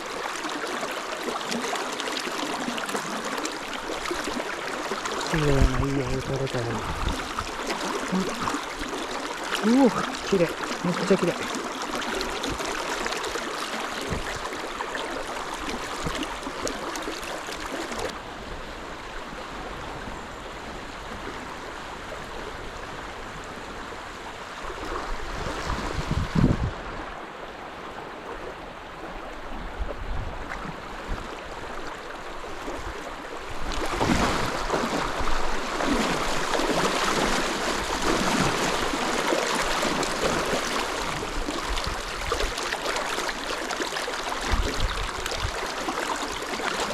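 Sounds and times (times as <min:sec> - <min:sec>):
river water rushing over rapid: 0:00.0 - 0:19.9, 0:30.8 - 0:46.9.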